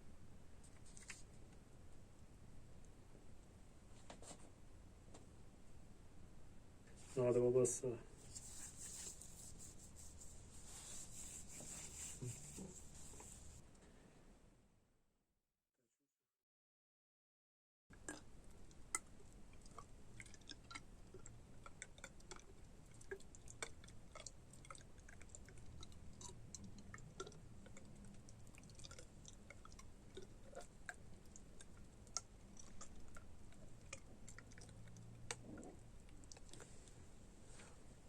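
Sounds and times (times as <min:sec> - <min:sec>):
faint small clicks and crackles: 0:00.6 - 0:01.6, 0:17.9 - 0:37.0.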